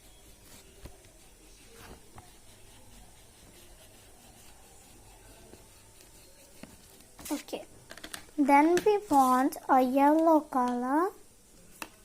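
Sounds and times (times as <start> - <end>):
pencil scratching on paper: 0.0 - 7.5.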